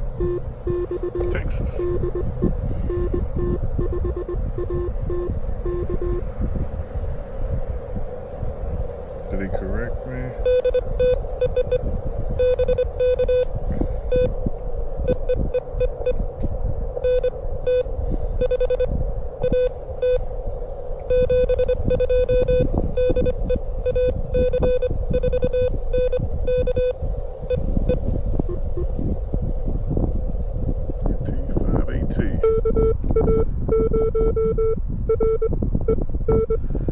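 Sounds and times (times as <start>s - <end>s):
morse code beeps: 0.0s - 6.2s, 10.4s - 11.8s, 12.4s - 13.5s, 14.1s - 14.3s, 15.0s - 16.2s, 17.0s - 20.2s, 21.1s - 28.9s, 32.4s - 36.6s
wind rumble on microphone: 0.0s - 36.9s.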